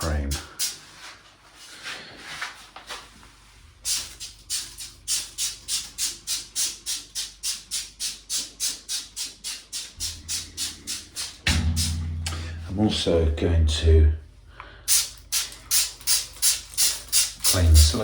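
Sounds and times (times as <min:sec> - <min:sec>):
spray bottle hissing: 0:14.9 - 0:17.9.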